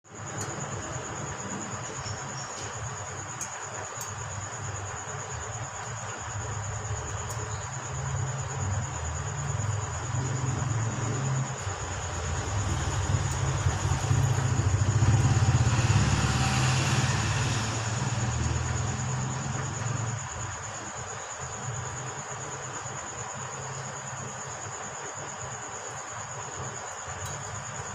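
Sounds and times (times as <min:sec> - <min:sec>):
cricket trilling: 0:00.1 - 0:27.9
vehicle engine running: 0:07.9 - 0:20.4.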